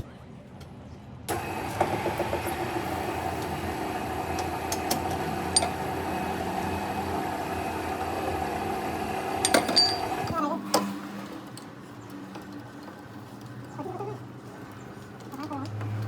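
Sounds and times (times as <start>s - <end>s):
machine motor humming: 1.3s - 11.2s.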